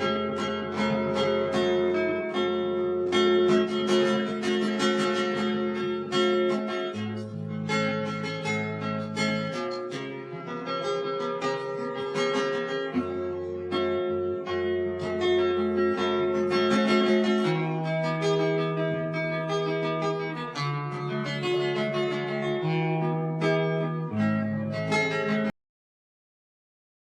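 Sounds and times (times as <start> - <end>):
acoustic guitar music: 0.0 - 25.5.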